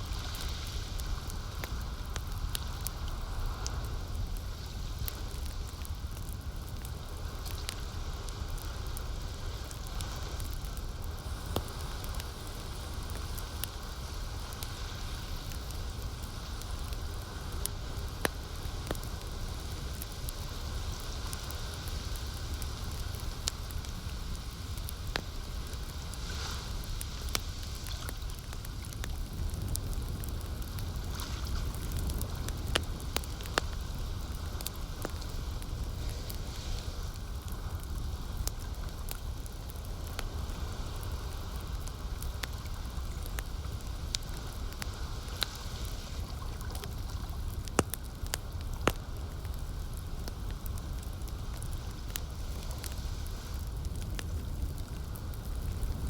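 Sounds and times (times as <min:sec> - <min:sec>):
campfire crackling and popping: 0:00.0 - 0:56.0.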